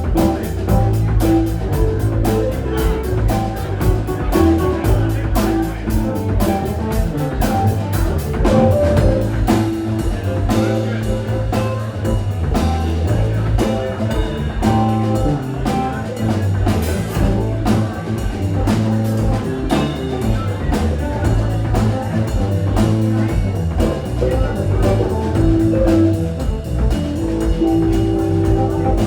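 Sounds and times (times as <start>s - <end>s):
live band playing: 0.0s - 29.0s
steady drumbeat: 0.0s - 29.0s.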